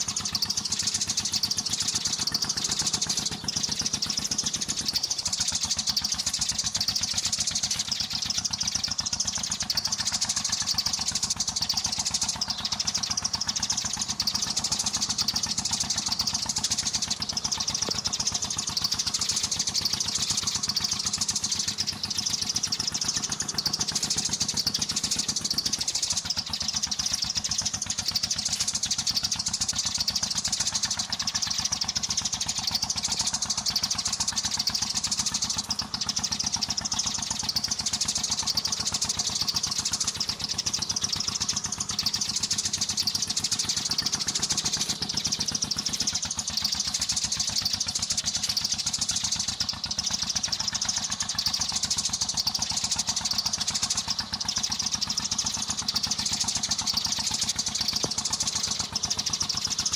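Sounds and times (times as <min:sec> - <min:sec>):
sparrows chirping: 0:00.0 - 0:59.9.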